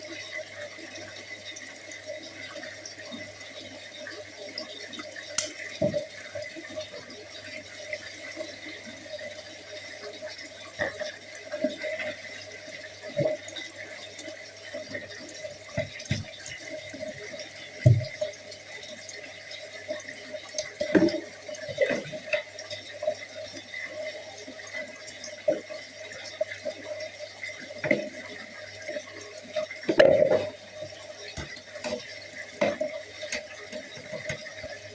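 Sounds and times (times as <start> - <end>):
water running from tap: 0.0 - 34.9
knocks and clatters in sink: 5.4 - 6.2, 15.7 - 17.2, 17.8 - 18.2, 20.7 - 22.6, 27.8 - 28.3, 29.8 - 30.7, 31.3 - 34.9.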